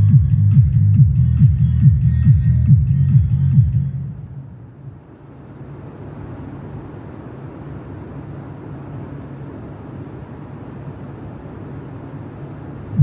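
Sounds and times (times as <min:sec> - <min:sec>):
bass-heavy music: 0:00.0 - 0:04.2
low rumbling noise: 0:00.0 - 0:13.0.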